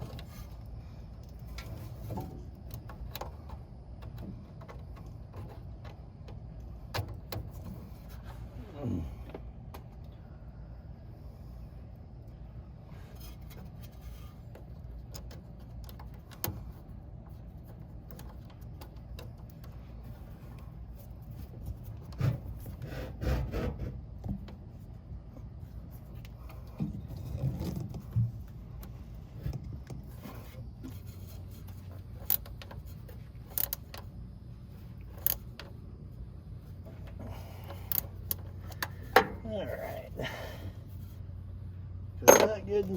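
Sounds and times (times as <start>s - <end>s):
hand tools clicking and scraping: 36.8s - 40.4s.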